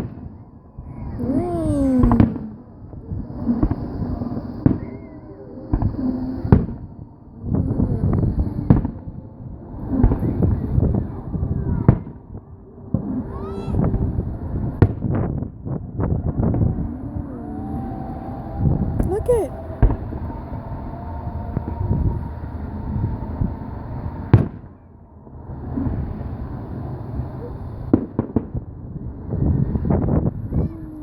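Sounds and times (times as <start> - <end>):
fireworks bangs and crackles: 3.6 - 5.0, 5.7 - 6.9, 8.7 - 9.0, 13.8 - 16.8, 23.4 - 24.7, 27.8 - 30.4.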